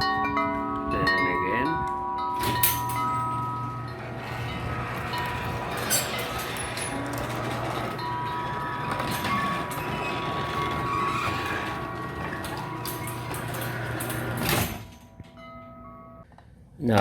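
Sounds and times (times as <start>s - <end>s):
rollers rumbling and rattling: 0.4s - 15.5s
garage door clack: 2.2s - 16.0s
garage door motor hum: 2.2s - 16.2s.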